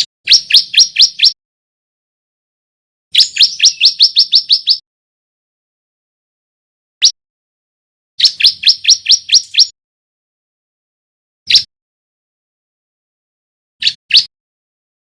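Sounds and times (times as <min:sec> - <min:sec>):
bird singing rising chirps: 0:03.2 - 0:04.8, 0:08.2 - 0:09.8.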